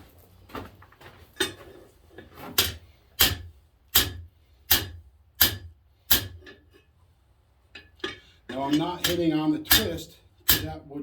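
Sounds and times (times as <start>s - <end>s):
hammer striking steel on anvil: 2.6s - 6.6s, 7.8s - 10.8s.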